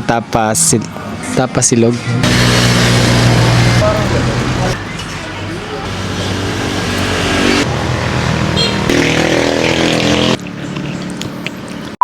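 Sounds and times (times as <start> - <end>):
motorcycle engine running: 2.2 - 11.4.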